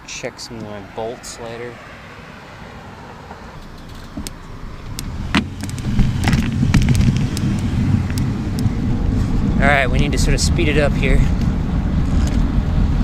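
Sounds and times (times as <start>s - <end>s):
low traffic rumble: 0.0s - 13.0s.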